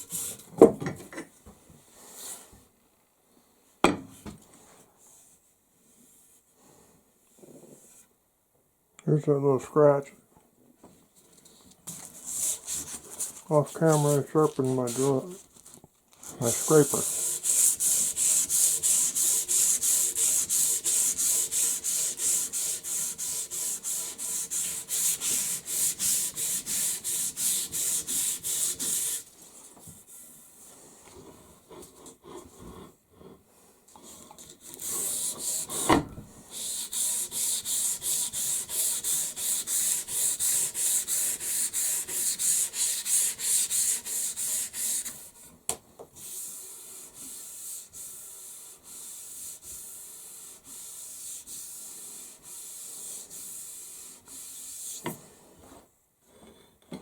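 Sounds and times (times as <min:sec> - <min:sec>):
scraping strokes on wooden handle: 0:11.9 - 0:15.5, 0:16.2 - 0:29.3, 0:34.0 - 0:35.9, 0:36.5 - 0:45.5, 0:46.2 - 0:55.8.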